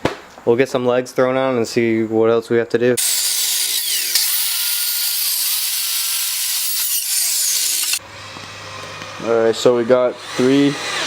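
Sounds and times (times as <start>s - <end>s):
power tool cutting wood: 3.0s - 11.0s.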